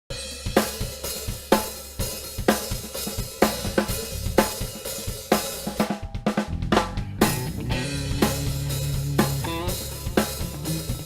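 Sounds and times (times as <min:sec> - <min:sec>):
drum kit playing beat: 0:00.1 - 0:11.0.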